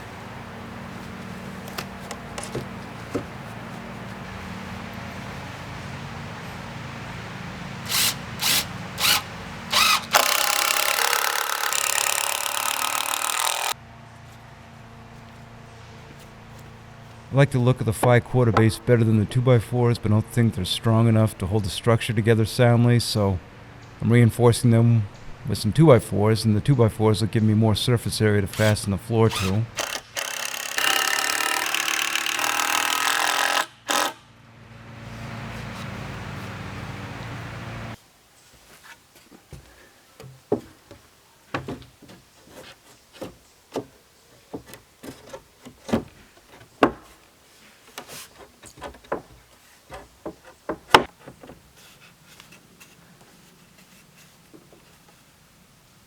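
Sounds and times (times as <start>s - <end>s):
impact driver motor whining: 7.9s - 13.8s
impact driver hammering screw: 29.4s - 34.2s.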